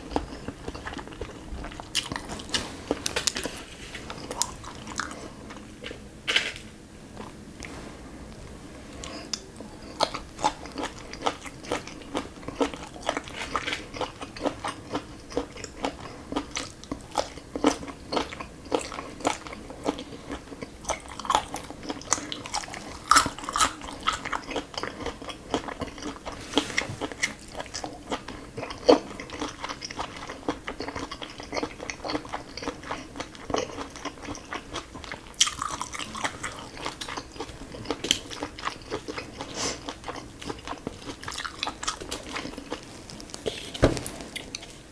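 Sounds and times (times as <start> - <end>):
chewing with clicky mouth sounds: 0.0 - 3.5, 9.0 - 26.4, 27.0 - 43.6.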